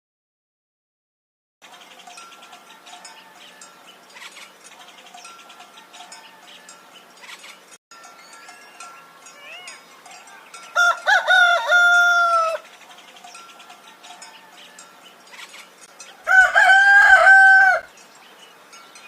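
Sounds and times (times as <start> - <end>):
rooster crowing: 10.7 - 12.6, 16.2 - 17.9.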